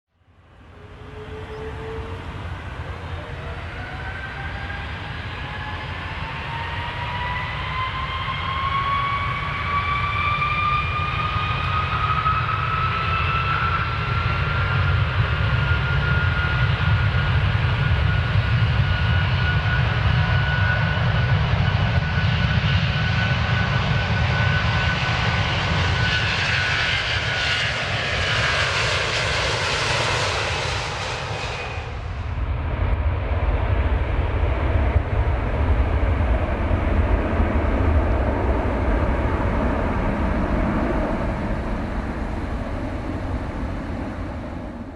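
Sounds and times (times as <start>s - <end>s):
airplane engine whine: 0.1s - 44.9s
deep engine rumble: 27.7s - 44.9s.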